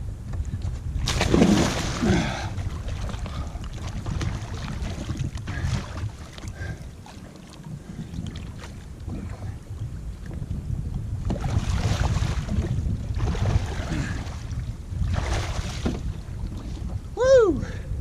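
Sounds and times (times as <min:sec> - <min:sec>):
wind rumble on microphone: 0:00.0 - 0:18.0
water splashing around kayak: 0:00.4 - 0:17.2
loud splash: 0:01.0 - 0:02.5.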